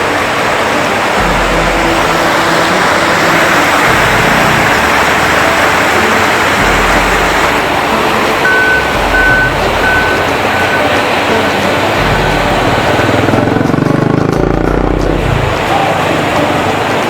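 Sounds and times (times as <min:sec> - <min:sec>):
loud steady rushing noise: 0:00.0 - 0:17.0
high electronic beeping: 0:01.2 - 0:13.7.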